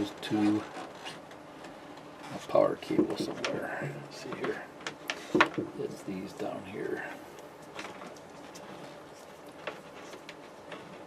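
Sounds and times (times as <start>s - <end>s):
cable handling noise: 7.4s - 11.0s.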